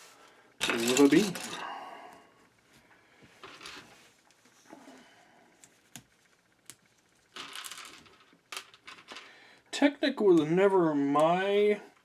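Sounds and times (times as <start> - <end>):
plastic pieces rustling: 0.6 - 1.6, 7.3 - 9.3.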